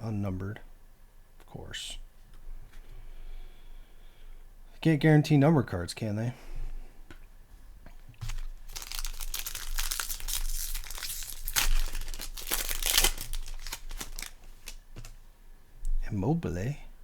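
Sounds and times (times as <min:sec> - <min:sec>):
wrapper tearing and crinkling: 0:08.2 - 0:15.2.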